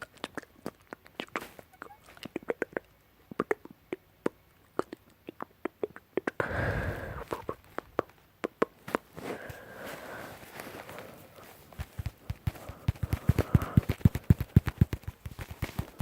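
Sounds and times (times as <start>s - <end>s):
wet mouth clicks and lip smacks: 0.0s - 6.4s
heavy breath: 6.4s - 7.6s, 9.2s - 14.1s.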